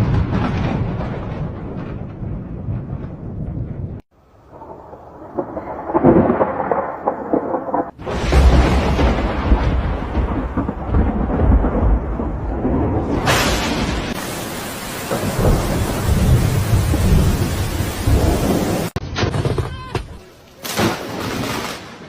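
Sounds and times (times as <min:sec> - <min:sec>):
thunder rumbling: 0:00.0 - 0:19.0
rain hissing: 0:04.1 - 0:19.0.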